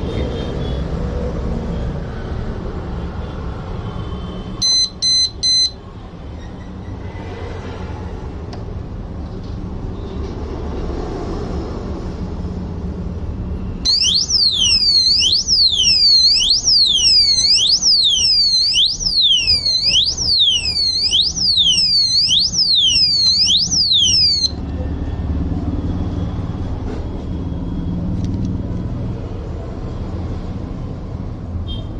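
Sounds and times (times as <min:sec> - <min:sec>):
lock alarm siren: 0:04.6 - 0:05.8, 0:13.9 - 0:24.6.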